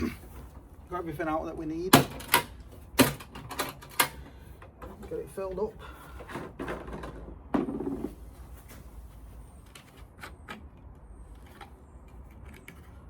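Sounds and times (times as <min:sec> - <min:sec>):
plastic can knock and scrape: 0:06.4 - 0:08.2.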